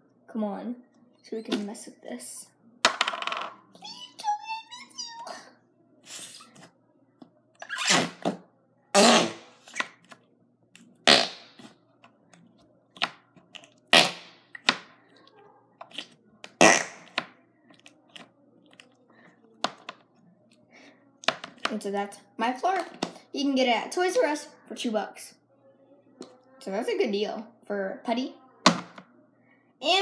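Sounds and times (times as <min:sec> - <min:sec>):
noise putty fart-like noises: 0:07.6 - 0:08.3, 0:09.0 - 0:09.8, 0:11.0 - 0:11.6, 0:13.9 - 0:14.4, 0:16.5 - 0:17.2.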